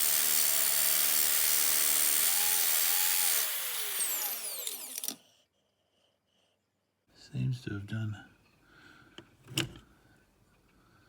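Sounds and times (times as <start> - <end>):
drill bit sharpener grinding: 0.0 - 5.2
motor winding down whine: 2.3 - 5.2.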